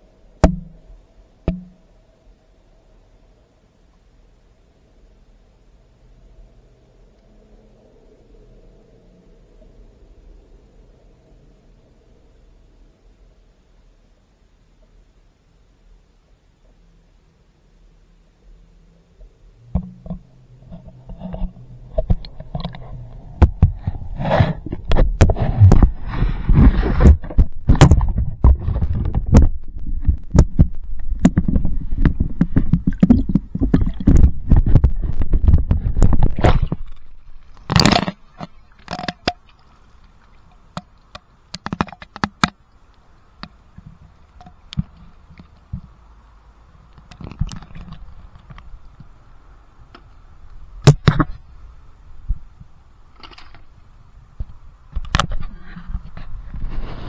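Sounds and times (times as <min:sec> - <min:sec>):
sharp knock: 0:00.4 - 0:00.8, 0:01.5 - 0:01.8
low churning rumble: 0:18.7 - 0:41.5
knocks and scrapes: 0:19.6 - 0:39.4, 0:54.4 - 0:57.0
water sloshing and gurgling: 0:19.6 - 0:46.0, 0:46.8 - 0:57.0.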